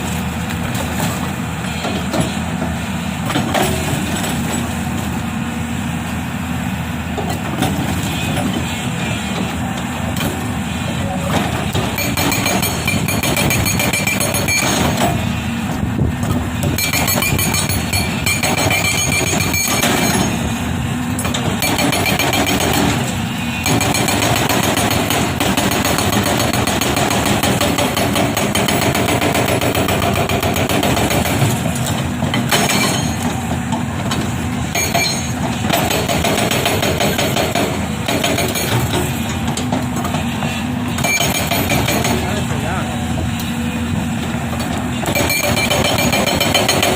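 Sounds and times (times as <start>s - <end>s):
diesel engine running: 0.0s - 46.9s
hydraulic rock breaker hammering: 11.3s - 20.5s, 21.2s - 42.8s, 44.6s - 46.9s.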